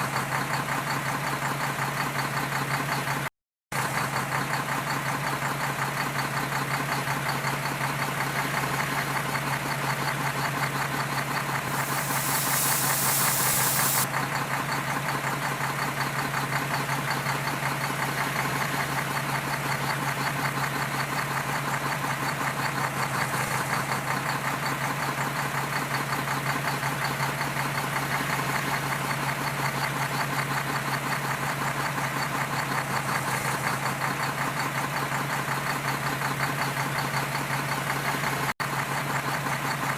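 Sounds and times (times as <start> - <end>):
diesel engine clattering: 0.0 - 39.9
loud hiss: 11.7 - 14.1.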